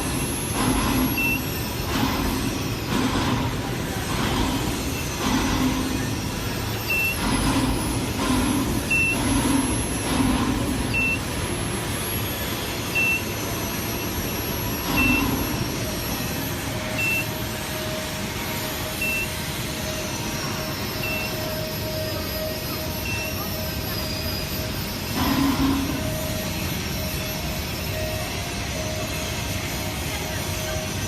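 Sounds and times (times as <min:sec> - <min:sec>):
steady hum tone: 0:00.0 - 0:31.0
steady machinery noise: 0:00.0 - 0:31.0
short high electronic beep: 0:12.9 - 0:15.6, 0:16.9 - 0:17.4, 0:18.9 - 0:19.4, 0:20.9 - 0:24.4.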